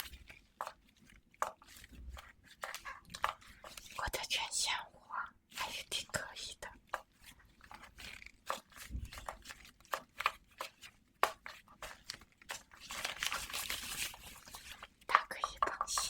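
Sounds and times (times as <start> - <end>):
crinkling and tearing: 0.0 - 4.0, 6.8 - 15.2.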